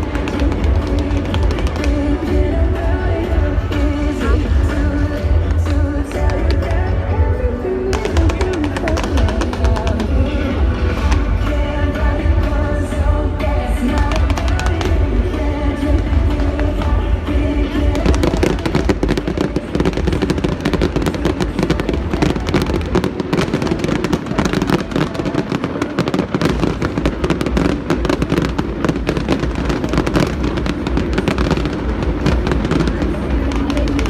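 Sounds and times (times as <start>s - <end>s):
fireworks bursting and crackling: 0.0s - 34.0s
loud background music: 0.0s - 34.0s.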